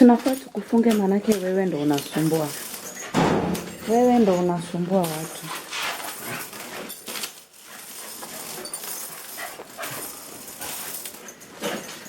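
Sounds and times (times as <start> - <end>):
dogs scuffling: 0.0 - 12.0
dogs whining: 7.8 - 12.0.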